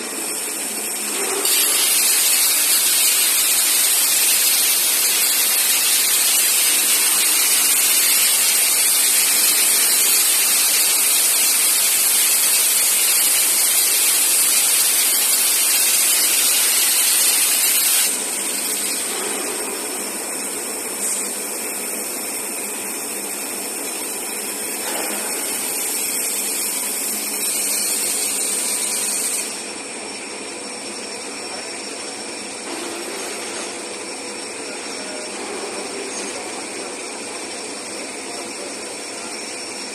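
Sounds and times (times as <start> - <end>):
cutting torch hissing: 0.0 - 29.9.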